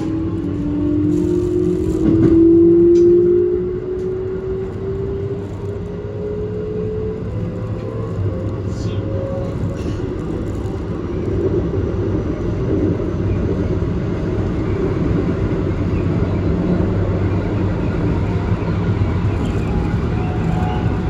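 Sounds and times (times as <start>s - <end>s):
train wheels and motors rumbling: 0.0s - 21.0s.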